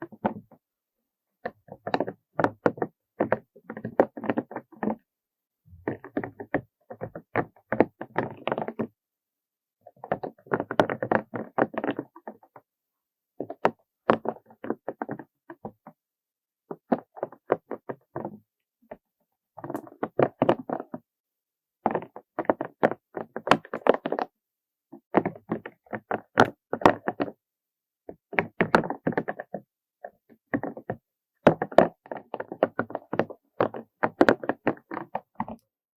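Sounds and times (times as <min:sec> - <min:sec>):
rapid clicking taps on objects: 0:24.9 - 0:27.4, 0:28.1 - 0:35.6.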